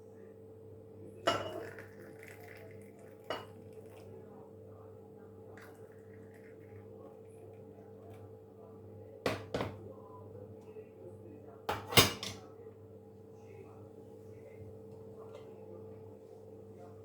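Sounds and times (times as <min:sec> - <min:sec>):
dishes knocking: 0:09.3 - 0:09.8.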